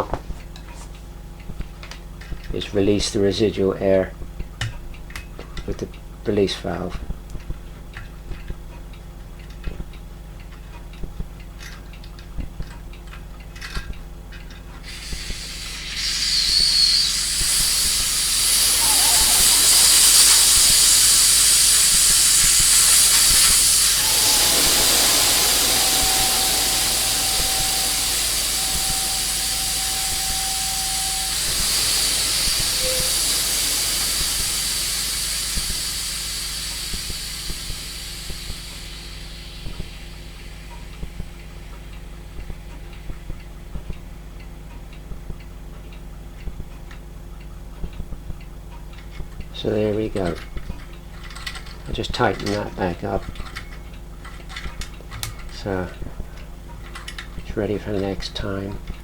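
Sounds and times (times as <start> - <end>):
faint clicks: 13.5 - 38.8
compressed air hissing: 14.8 - 41.9
faint whistle: 14.9 - 41.4.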